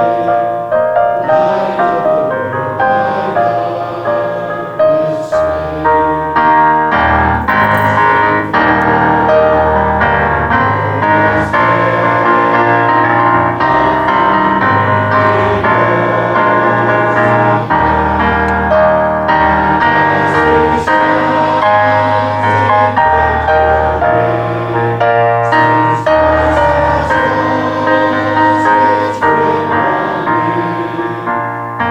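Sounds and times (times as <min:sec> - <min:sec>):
slow keyboard chords: 0:00.0 - 0:31.9
sustained bass line: 0:07.3 - 0:10.0.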